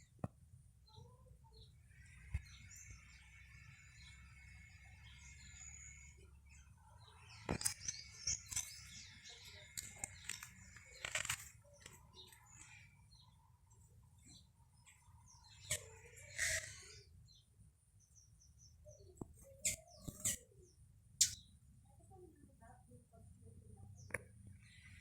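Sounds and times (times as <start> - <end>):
high bird twittering: 14.8 - 17.1, 18.8 - 21.6.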